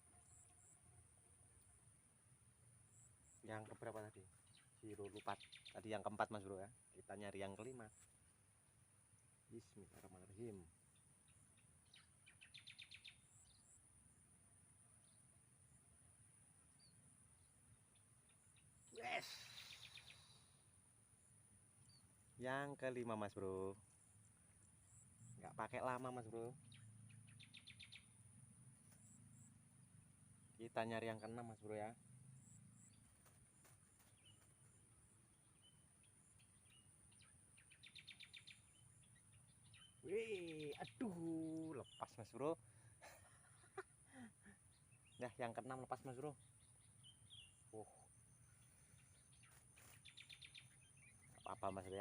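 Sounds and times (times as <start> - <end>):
small bird chirping: 2.8 - 8.4, 9.1 - 14.0, 14.9 - 52.0
bird trill of rapid notes: 18.9 - 20.5
high insect whine: 18.9 - 20.8.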